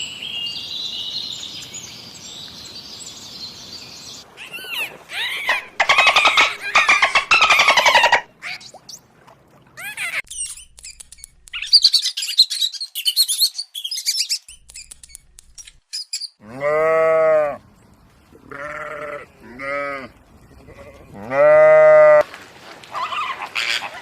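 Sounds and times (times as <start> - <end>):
drawn-out farm animal calls: 4.4 - 8.3, 16.4 - 17.6, 18.4 - 22.2, 22.9 - 24.0
high-pitched bird chirping: 4.4 - 9.0, 9.8 - 16.4.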